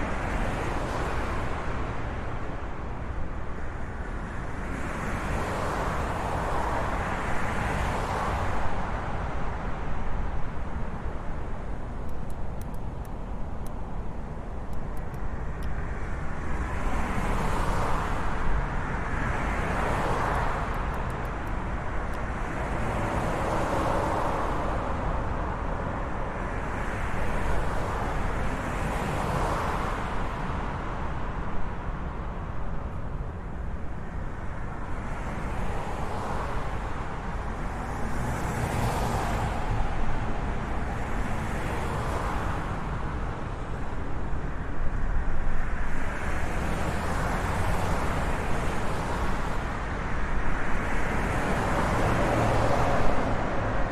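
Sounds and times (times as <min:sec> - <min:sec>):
cars passing: 0:35.0 - 0:44.0, 0:45.6 - 0:53.9.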